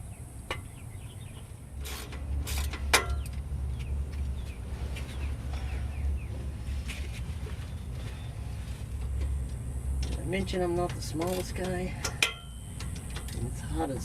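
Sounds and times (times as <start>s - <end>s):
steady low rumble: 0.0s - 14.0s
sharp metal knocks: 10.0s - 13.4s.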